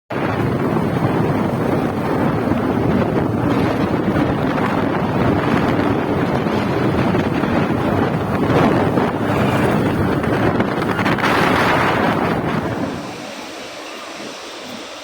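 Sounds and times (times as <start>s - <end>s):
waterfall rushing: 11.2s - 15.0s.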